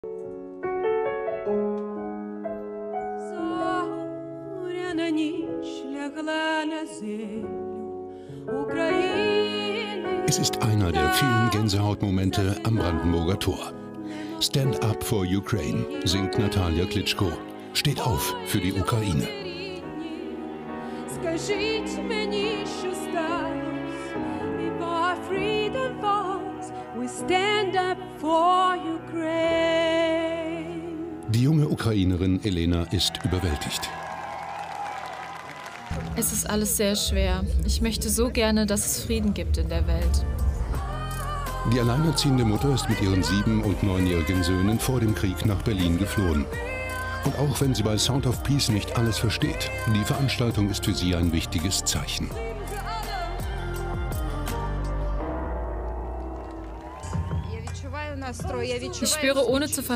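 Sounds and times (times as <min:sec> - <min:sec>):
piano playing held chords: 0:00.0 - 0:34.6
person singing with vibrato: 0:03.3 - 0:14.8, 0:40.2 - 0:55.4.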